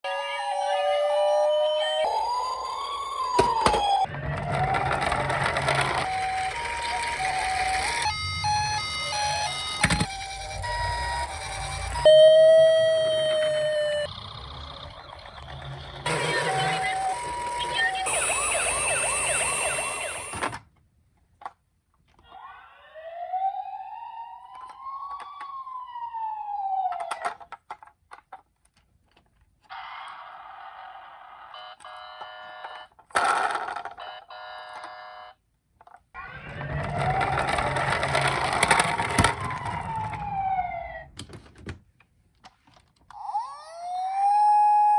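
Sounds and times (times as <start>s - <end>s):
toy electronic siren wailing: 0.0s - 20.6s, 22.2s - 27.4s, 36.2s - 41.1s, 43.1s - 44.9s.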